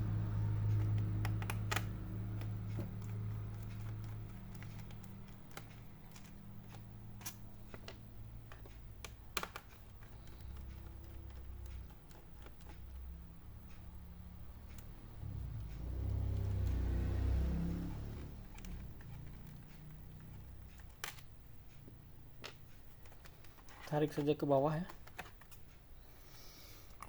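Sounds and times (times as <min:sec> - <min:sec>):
screwdriver clicking on plastic: 0:00.6 - 0:13.8, 0:18.5 - 0:25.8.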